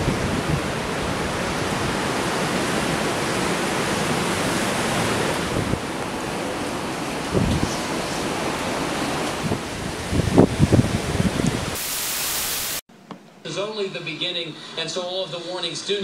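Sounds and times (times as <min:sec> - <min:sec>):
wind buffeting microphone: 0:00.0 - 0:03.2, 0:04.0 - 0:06.0, 0:07.0 - 0:11.8
strong wind rushing: 0:00.0 - 0:06.0, 0:07.0 - 0:12.4.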